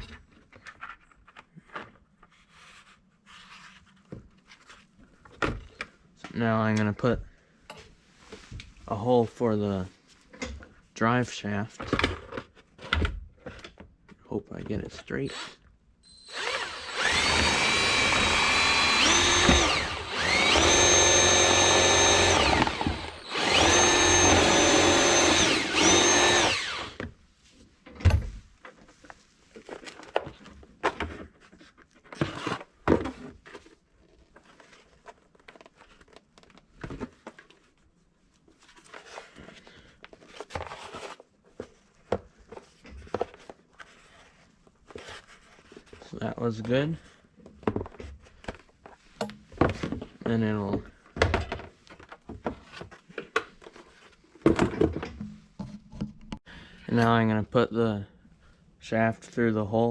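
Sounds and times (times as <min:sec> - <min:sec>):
power drill running: 0:15.3 - 0:27.0.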